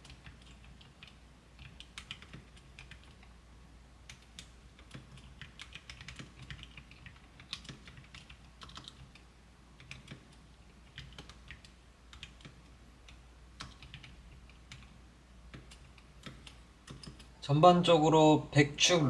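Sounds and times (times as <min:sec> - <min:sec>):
soft mechanical keyboard typing: 0:00.0 - 0:17.9.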